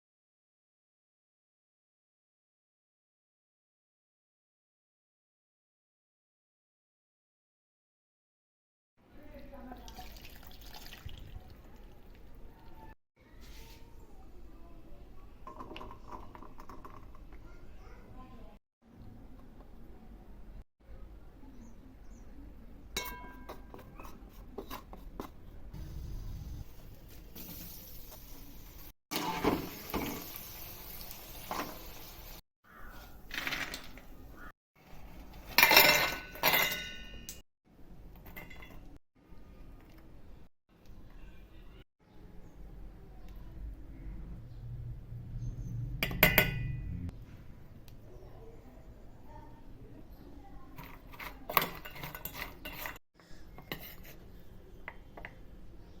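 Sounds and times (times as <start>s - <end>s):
metal spoon clinking against bowl: 23.0s - 24.2s, 35.6s - 37.4s
utensils clattering against dishes: 29.1s - 30.4s, 35.0s - 37.4s, 50.8s - 53.0s
metallic ring: 46.0s - 47.0s.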